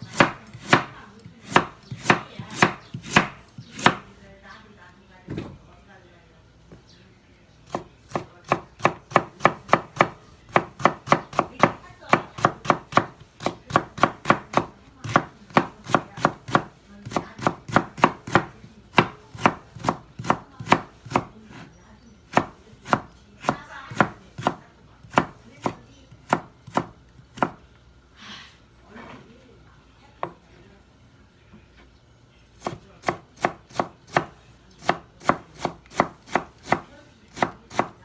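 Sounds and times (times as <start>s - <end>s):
knife chopping on cutting board: 0.0s - 4.1s, 7.7s - 21.6s, 22.3s - 27.6s, 32.6s - 38.0s.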